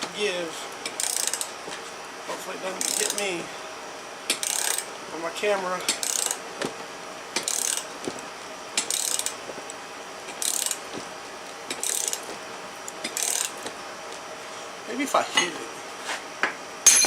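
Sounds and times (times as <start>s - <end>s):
ratchet wrench clicking: 0.9s - 1.5s, 2.8s - 3.2s, 4.3s - 4.9s, 5.9s - 6.4s, 7.4s - 7.8s, 8.8s - 9.4s, 10.4s - 10.8s, 11.7s - 12.2s, 13.0s - 13.5s.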